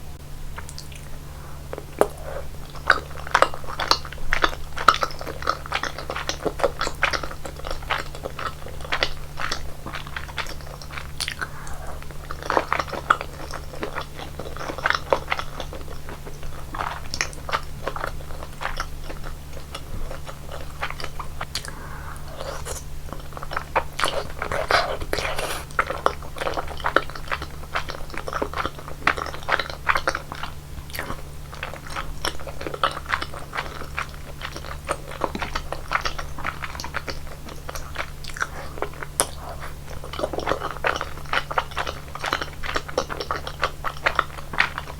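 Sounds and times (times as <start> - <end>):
steady low hum: 0.0 - 15.6, 16.3 - 42.6
chewing mouth clicks and smacks: 2.0 - 11.5, 22.4 - 44.9.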